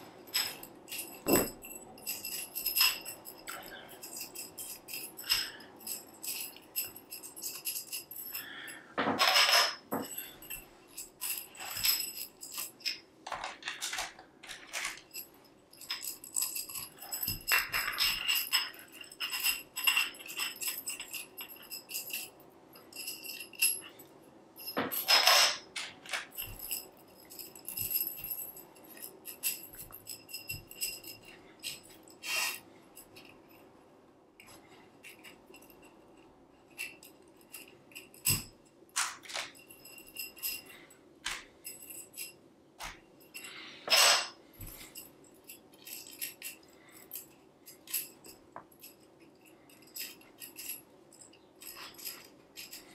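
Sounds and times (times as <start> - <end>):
clicks clinks and jingling: 0.0 - 33.8, 34.4 - 52.9.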